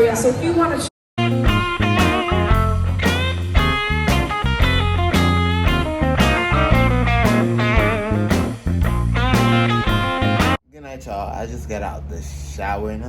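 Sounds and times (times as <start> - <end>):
electric guitar rock music: 1.2 - 10.6.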